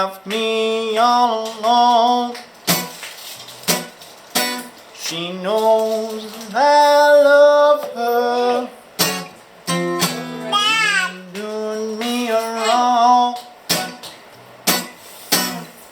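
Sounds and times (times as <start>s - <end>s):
person singing blues: 0.0s - 2.5s, 4.9s - 14.0s
strummed guitar: 0.0s - 15.9s.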